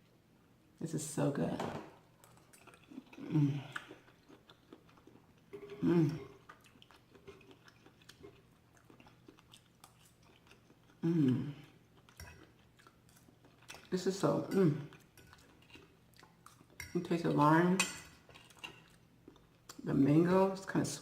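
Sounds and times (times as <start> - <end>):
chewing and wet mouth clicks: 2.2 - 5.8, 6.4 - 11.0, 12.0 - 13.9, 14.9 - 16.8
person humming: 5.8 - 6.3, 11.0 - 11.6.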